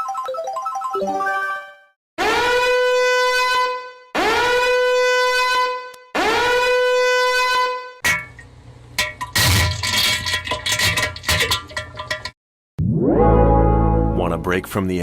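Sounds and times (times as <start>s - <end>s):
horn blasts: 2.2s - 8.0s
falling run of notes: 12.8s - 14.4s.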